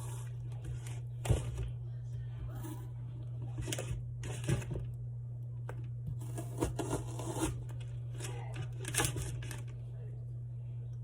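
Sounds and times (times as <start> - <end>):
steady low hum: 0.0 - 11.0
knife cutting onion on board: 6.1 - 7.7.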